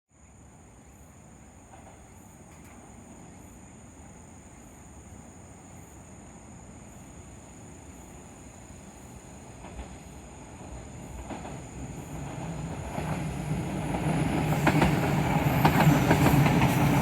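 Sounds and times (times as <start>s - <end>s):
insects trilling: 0.1s - 17.0s
diesel railcar rumble: 0.3s - 17.0s.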